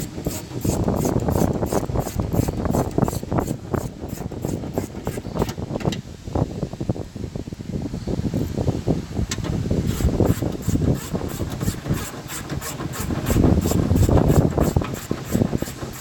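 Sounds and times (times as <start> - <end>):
hand ratchet clicking: 0.0 - 5.6, 9.3 - 16.0
tool handling rubbing: 0.0 - 6.0, 9.3 - 16.0.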